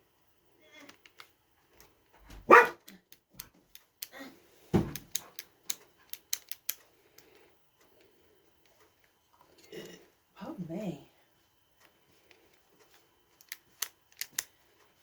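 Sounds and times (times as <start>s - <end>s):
dog barking: 2.4s - 2.9s
small sharp clicks: 5.0s - 8.1s, 11.8s - 14.9s.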